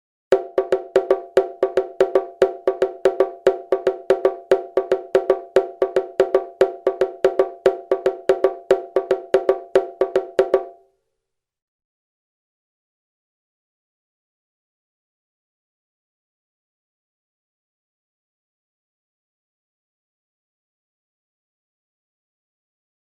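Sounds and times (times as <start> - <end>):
bongos played fast: 0.3 - 10.8.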